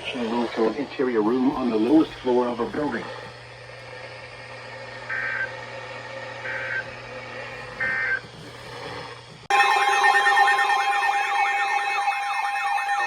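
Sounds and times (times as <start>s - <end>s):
steady low hum: 0.0s - 13.0s
two-tone digital data bursts: 5.1s - 5.6s.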